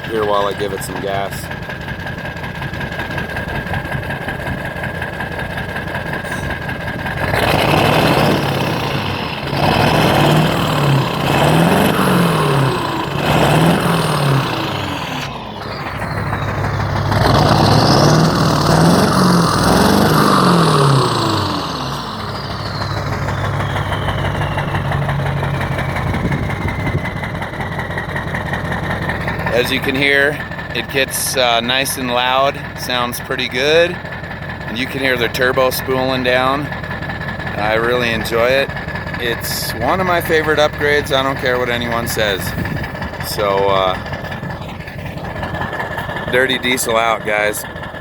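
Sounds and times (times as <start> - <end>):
diesel engine revving: 0.0 - 48.0
turbo whistle spooling down: 7.2 - 27.6.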